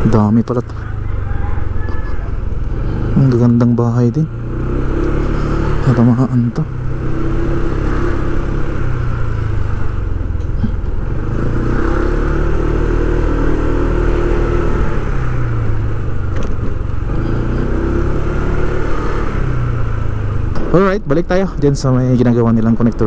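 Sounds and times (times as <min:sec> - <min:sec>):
steady low rumble: 0:00.0 - 0:11.7
vehicle engine running: 0:00.0 - 0:23.0.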